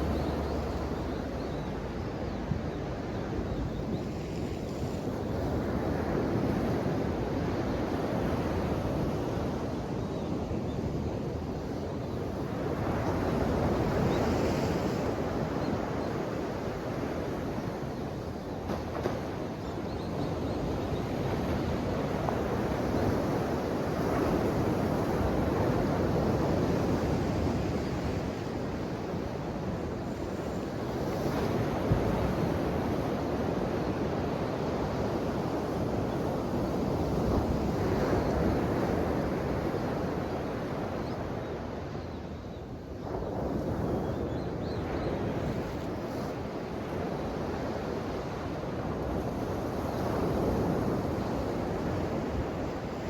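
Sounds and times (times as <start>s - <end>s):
ocean waves breaking on shore: 0.0s - 42.0s, 42.6s - 53.0s.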